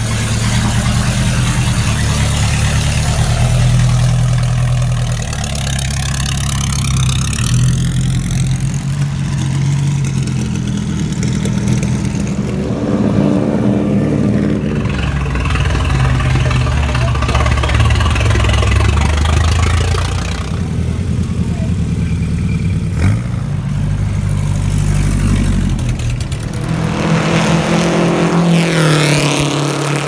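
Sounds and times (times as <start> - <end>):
racecar engines running loudly: 0.0 - 30.0
racecar passing by: 9.4 - 20.7, 24.4 - 30.0.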